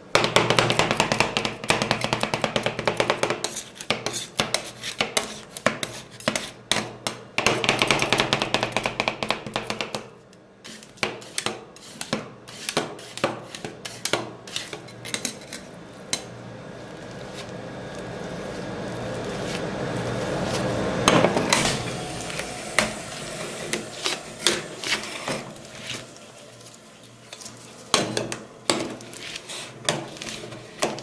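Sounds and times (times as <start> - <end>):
metal spatulas chopping on steel plate: 10.7 - 15.7.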